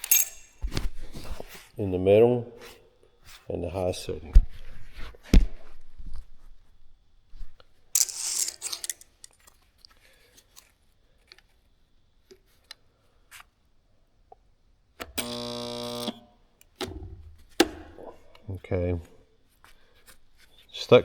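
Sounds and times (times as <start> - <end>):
handling rustle: 7.4 - 11.7
spot welder electrical buzz: 15.0 - 18.4.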